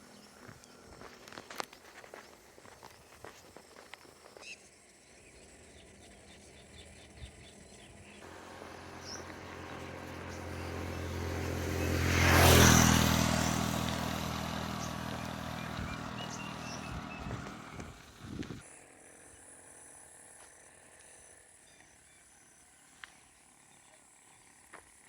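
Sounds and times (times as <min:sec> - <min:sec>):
vehicle engine passing by: 0:08.2 - 0:18.6.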